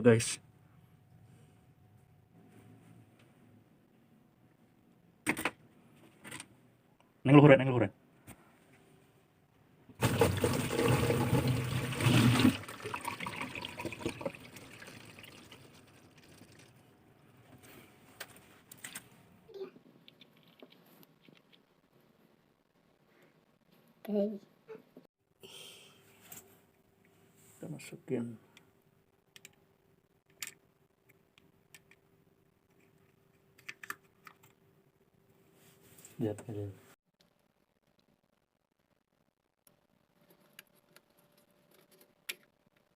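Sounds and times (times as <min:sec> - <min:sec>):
water gushing and trickling: 0:10.0 - 0:16.9
faint clicks and knocks of parts: 0:19.7 - 0:22.2, 0:28.5 - 0:34.7, 0:39.6 - 0:42.9.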